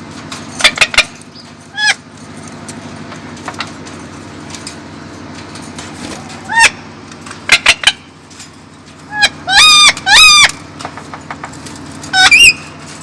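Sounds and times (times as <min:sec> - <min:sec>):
parrot squawking: 0:01.7 - 0:02.0, 0:06.5 - 0:06.8, 0:09.1 - 0:10.6, 0:12.1 - 0:12.8
parrot chirping: 0:06.5 - 0:06.8, 0:09.1 - 0:10.6, 0:12.1 - 0:12.8.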